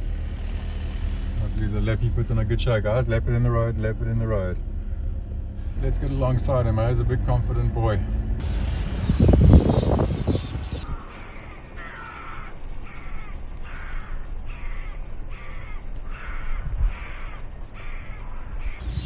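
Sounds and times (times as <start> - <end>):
low steady rumble: 0.0 - 11.6, 12.6 - 19.0
bird harsh caw-like calls: 8.4 - 19.0.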